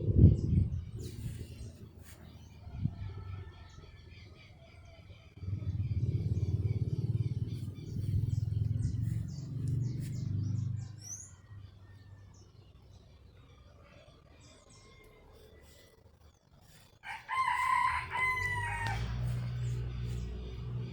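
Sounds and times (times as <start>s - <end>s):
small birds chirping: 0.0s - 20.9s
loud low rumble: 5.4s - 11.0s, 17.2s - 20.9s.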